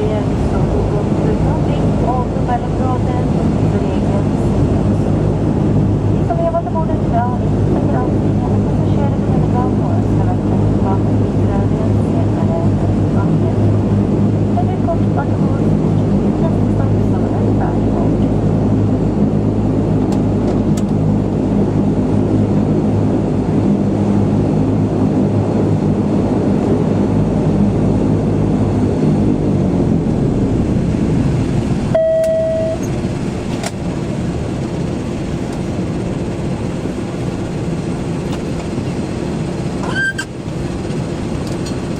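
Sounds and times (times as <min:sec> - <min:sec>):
low cabin rumble: 0:00.0 - 0:41.9
turboprop engines droning: 0:00.0 - 0:41.9
single cabin tone: 0:31.9 - 0:33.1, 0:39.8 - 0:40.3.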